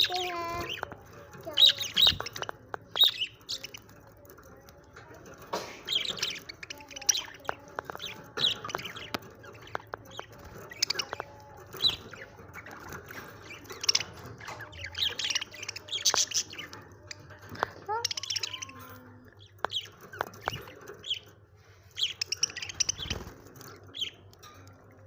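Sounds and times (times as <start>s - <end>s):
budgerigars chirping: 5.6s - 24.2s.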